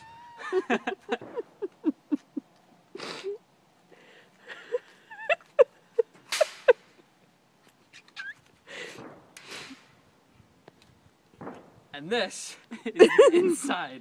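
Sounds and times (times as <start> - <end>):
person laughing breathlessly: 0.2 - 3.4, 4.0 - 7.1.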